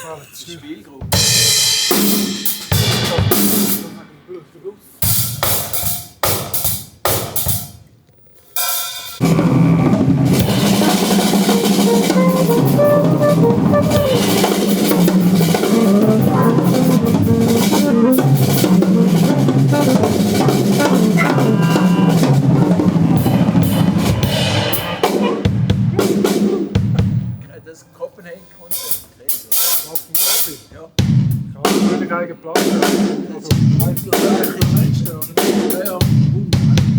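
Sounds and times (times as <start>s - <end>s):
drum kit hits: 1.0s - 4.0s, 8.8s - 27.4s, 29.6s - 36.9s
big band playing: 1.1s - 4.0s, 9.1s - 27.4s, 28.6s - 36.9s
stepping bass line: 9.2s - 24.7s.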